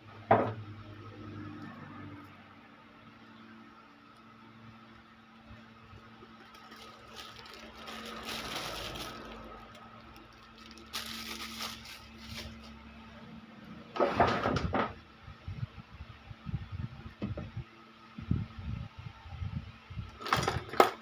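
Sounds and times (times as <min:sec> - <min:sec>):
steady low hum: 0:00.0 - 0:20.4
scraping and rustling: 0:06.4 - 0:12.8.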